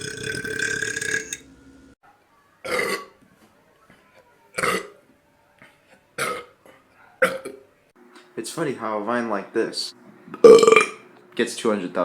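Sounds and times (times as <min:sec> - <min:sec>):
person burping: 0:00.0 - 0:01.4, 0:02.7 - 0:03.1, 0:04.6 - 0:05.0, 0:06.2 - 0:06.5, 0:10.4 - 0:11.0.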